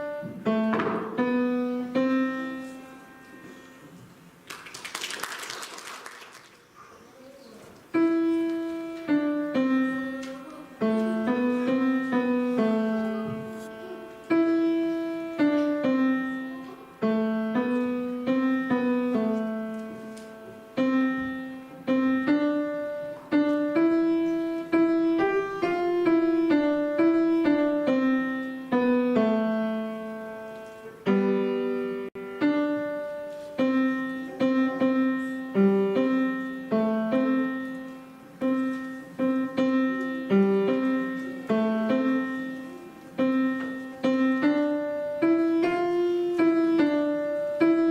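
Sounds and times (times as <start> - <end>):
piano melody with chords: 0.0 - 4.0, 7.9 - 47.9.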